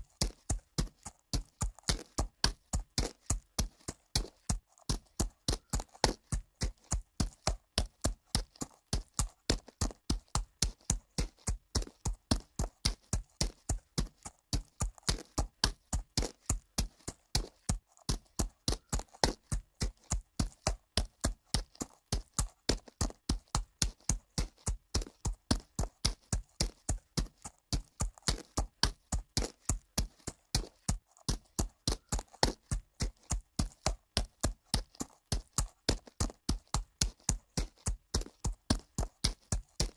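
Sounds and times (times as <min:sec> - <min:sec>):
horse hooves clip-clopping on dirt: 0:00.0 - 0:39.9.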